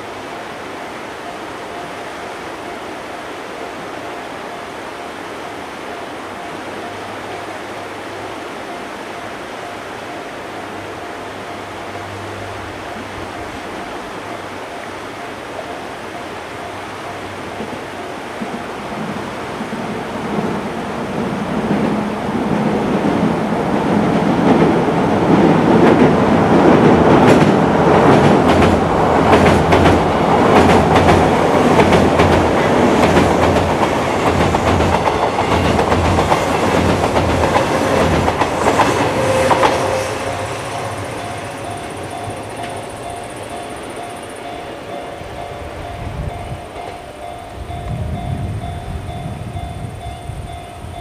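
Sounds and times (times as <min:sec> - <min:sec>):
train rumbling over bridge: 0:00.0 - 0:51.0
wheels clacking over rail joints: 0:17.2 - 0:45.9.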